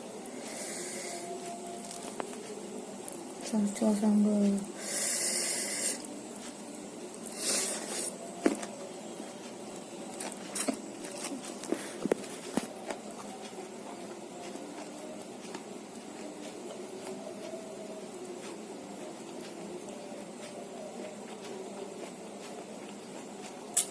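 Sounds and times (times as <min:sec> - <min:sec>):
person chewing with mouth smacks: 0:21.0 - 0:23.9.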